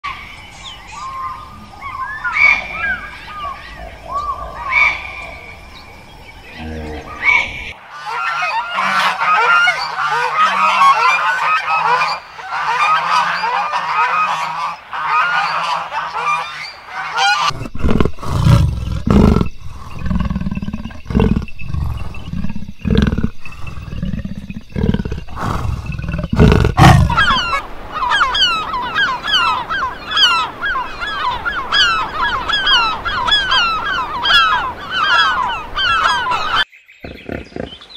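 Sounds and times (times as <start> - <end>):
birds chirping: 0.1 - 37.9
loud deep animal calls: 6.4 - 12.0, 17.1 - 37.9
fowl honking: 7.1 - 17.5, 26.8 - 36.6.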